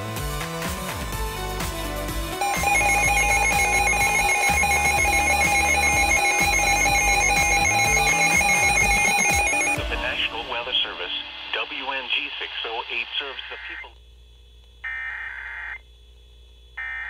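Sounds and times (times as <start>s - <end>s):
background music: 0.0s - 12.0s
electronic warbling alert tone: 2.4s - 9.8s.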